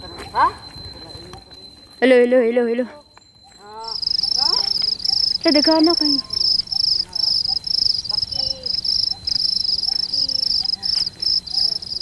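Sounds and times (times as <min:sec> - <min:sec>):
crickets chirping: 0:00.0 - 0:12.0
thin high whine: 0:03.7 - 0:12.0.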